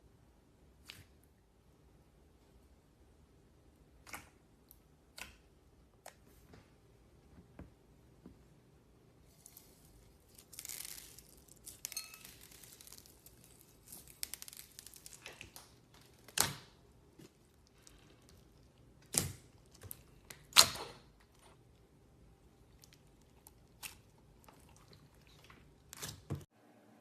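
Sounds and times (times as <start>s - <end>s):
slime crinkly crackling: 9.3s - 16.4s.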